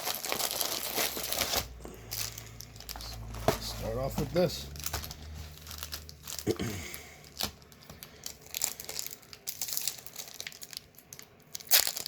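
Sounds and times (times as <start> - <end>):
plastic wrapper crinkling and tearing: 0.0 - 12.0.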